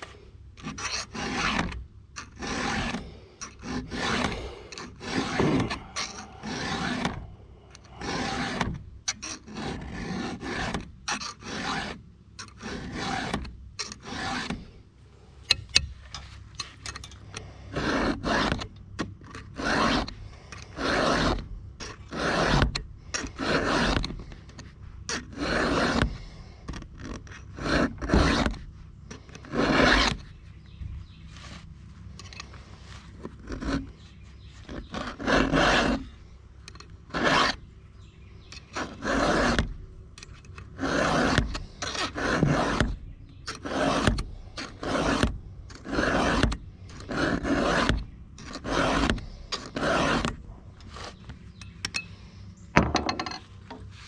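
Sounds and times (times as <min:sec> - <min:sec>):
file rasping on chainsaw chain: 0:00.6 - 0:14.8, 0:15.5 - 0:30.3, 0:32.2 - 0:37.7, 0:38.4 - 0:52.1.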